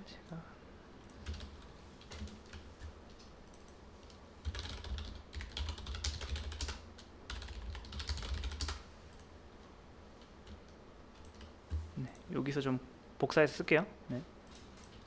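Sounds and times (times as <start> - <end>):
typing on computer keyboard: 1.0 - 9.3, 10.4 - 11.8, 14.4 - 15.0.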